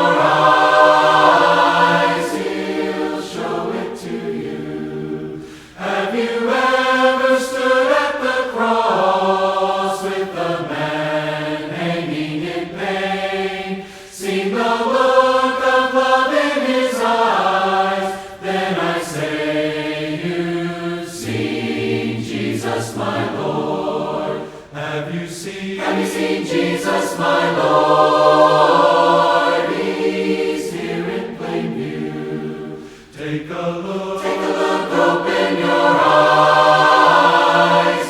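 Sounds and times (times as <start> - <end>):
choir singing a hymn: 0.0 - 38.0.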